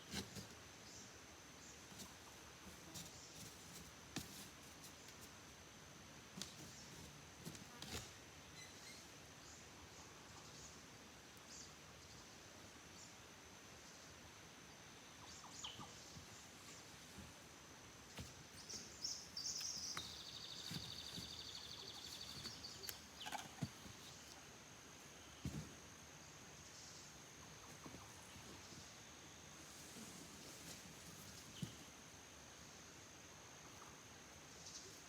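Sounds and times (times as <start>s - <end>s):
bird chirps: 8.5s - 9.6s, 18.6s - 23.6s.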